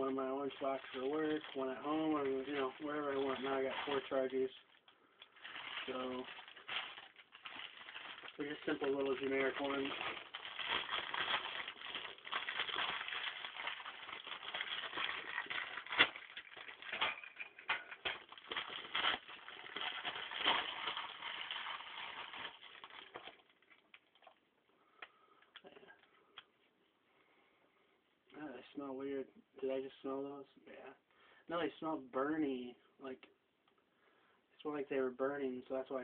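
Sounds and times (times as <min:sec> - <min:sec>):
packaging crinkling and rustling: 0:00.0 - 0:24.5.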